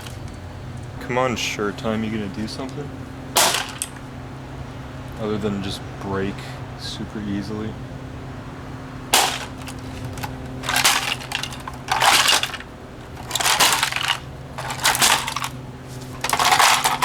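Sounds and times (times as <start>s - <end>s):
brick smashing plastic radio: 3.4s - 4.0s, 9.1s - 17.0s.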